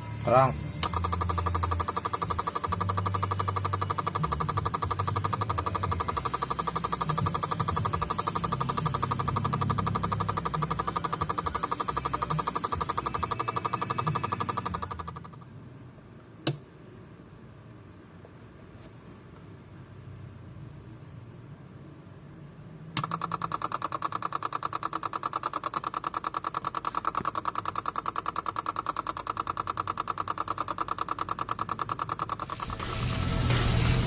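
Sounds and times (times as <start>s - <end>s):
rapid mechanical clicking: 0.0s - 15.5s, 22.9s - 34.0s
steady hum: 0.0s - 34.0s.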